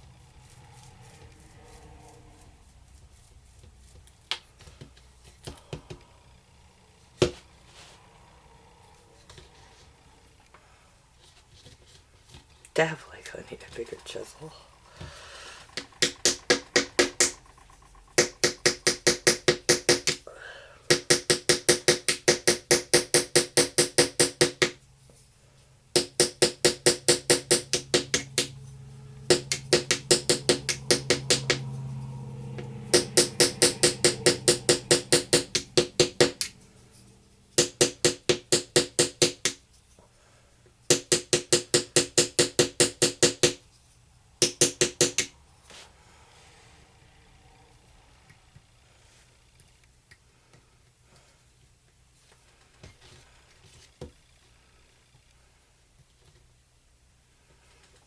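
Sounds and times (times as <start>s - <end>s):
hammer striking chisel: 15.6s - 17.6s, 18.2s - 20.2s, 20.9s - 24.8s, 26.0s - 28.6s, 29.2s - 31.7s, 32.5s - 36.7s, 37.5s - 39.6s, 40.9s - 43.6s, 44.4s - 45.3s.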